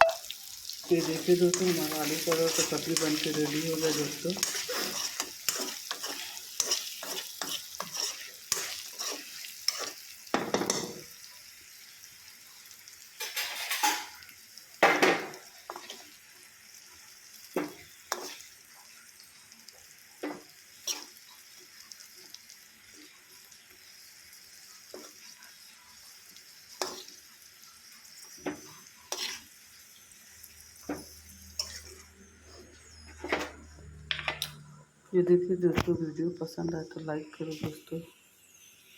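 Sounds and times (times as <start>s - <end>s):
food sizzling in oil: 0.0s - 34.5s, 35.8s - 38.9s
spatula scraping a pan: 0.8s - 11.2s, 15.7s - 16.2s, 17.6s - 18.6s, 20.2s - 21.2s, 26.7s - 27.3s, 28.2s - 29.6s, 30.8s - 33.7s.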